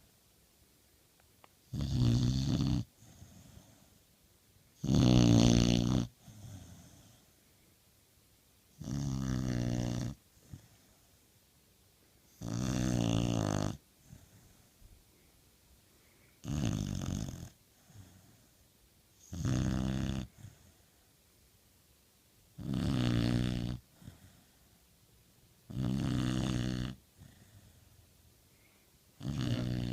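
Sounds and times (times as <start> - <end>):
dog snoring: 1.7 - 4.0, 4.8 - 7.4, 8.7 - 11.1, 12.3 - 14.7, 16.4 - 18.6, 19.2 - 20.9, 22.6 - 24.7, 25.7 - 28.0, 29.2 - 29.9.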